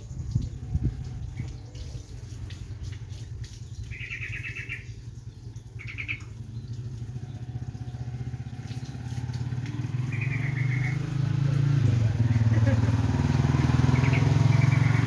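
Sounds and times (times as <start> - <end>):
bird chattering calls: 3.8 - 5.0, 5.8 - 6.4, 10.0 - 11.1, 13.9 - 15.0.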